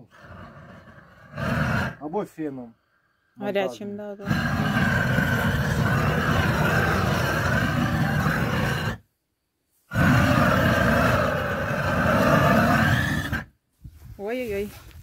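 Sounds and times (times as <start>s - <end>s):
blowtorch flame rushing: 0.0s - 2.0s, 4.2s - 9.0s, 9.9s - 13.5s.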